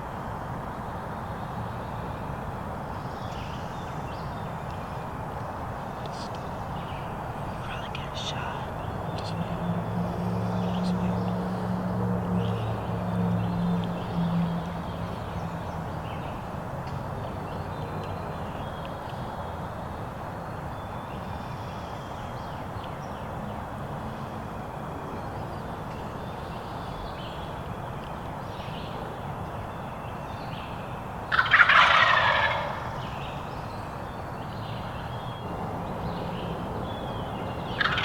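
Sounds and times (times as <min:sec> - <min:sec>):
turkey gobbling: 0:31.3 - 0:33.0, 0:37.8 - 0:38.0.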